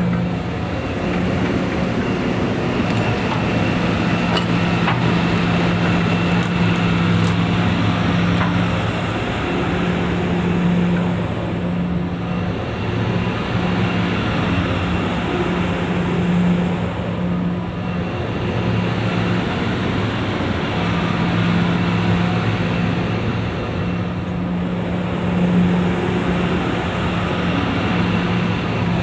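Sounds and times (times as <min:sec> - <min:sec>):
diesel engine running: 0:00.0 - 0:12.4.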